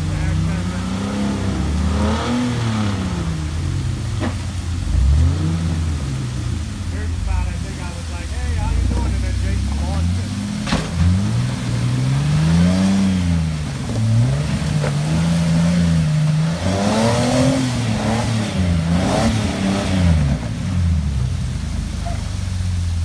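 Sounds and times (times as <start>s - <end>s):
off-road vehicle engine revving: 0.0s - 23.0s
vehicle clunks: 4.0s - 4.8s, 8.7s - 11.9s, 13.5s - 15.5s.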